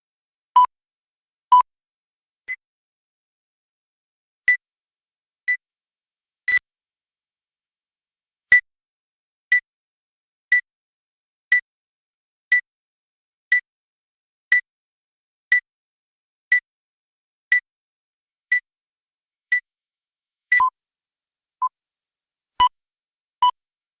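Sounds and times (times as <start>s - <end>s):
short electronic beeps: 20.5s - 20.7s.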